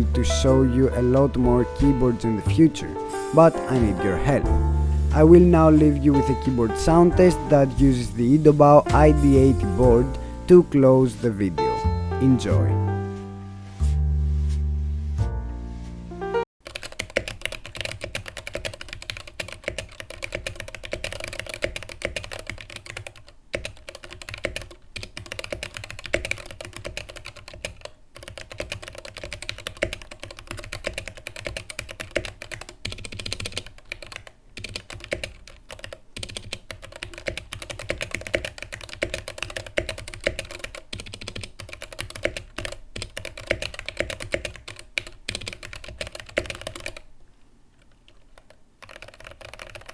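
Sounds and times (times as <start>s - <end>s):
mechanical keyboard typing: 16.6s - 47.1s, 47.8s - 49.9s.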